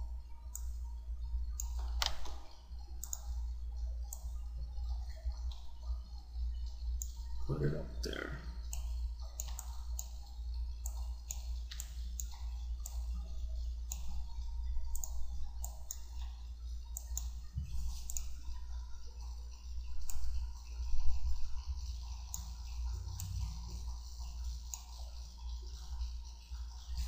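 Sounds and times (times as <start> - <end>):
steady low hum: 0.0 - 27.0
mouse and keyboard clicking: 1.5 - 3.4, 8.7 - 13.3, 13.9 - 16.3, 16.9 - 18.6.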